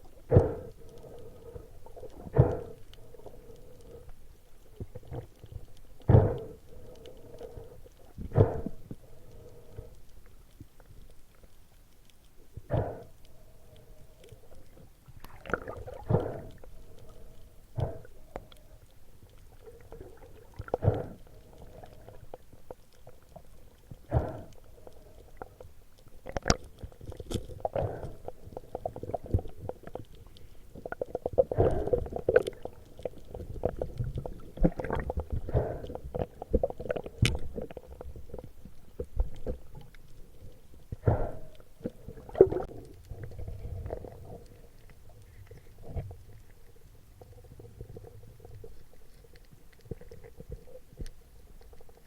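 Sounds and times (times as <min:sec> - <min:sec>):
underwater gurgling and bubbling: 0:00.0 - 0:10.0, 0:12.6 - 0:52.0
faint steady hum: 0:00.0 - 0:52.0.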